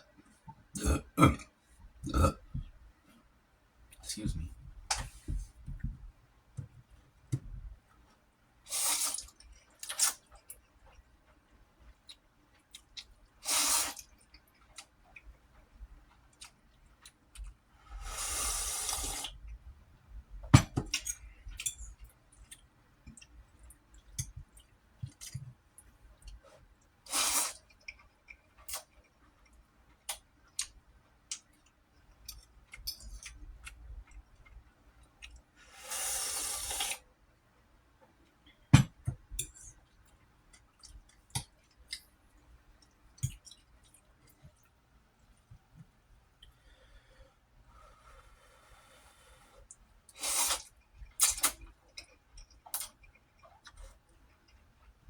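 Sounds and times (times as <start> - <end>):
slurping noodles: 18.0 - 19.4, 35.7 - 37.0, 50.2 - 50.7.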